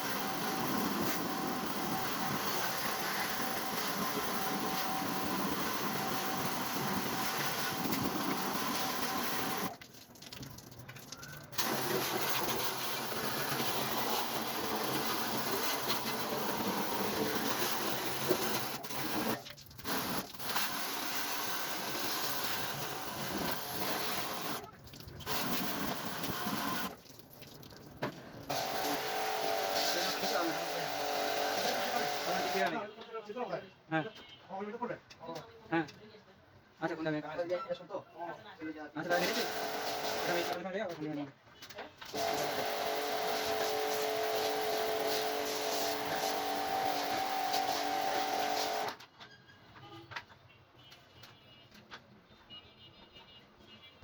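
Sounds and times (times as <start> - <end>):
water jet spraying: 0.0 - 27.1, 28.5 - 32.7, 39.1 - 40.6, 42.1 - 48.9.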